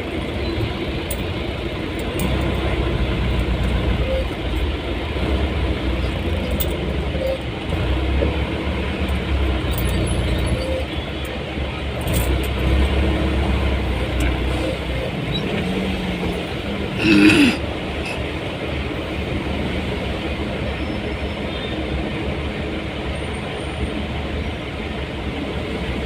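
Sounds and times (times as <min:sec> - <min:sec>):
road noise: 0:00.0 - 0:26.0
vehicle engine rumble: 0:00.0 - 0:26.0.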